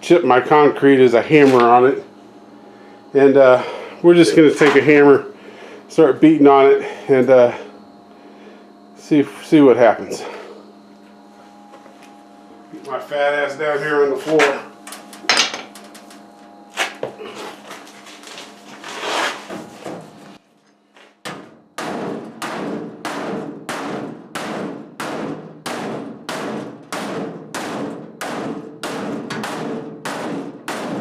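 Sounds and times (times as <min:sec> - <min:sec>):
hammer pounding sheet steel: 0:21.3 - 0:31.0.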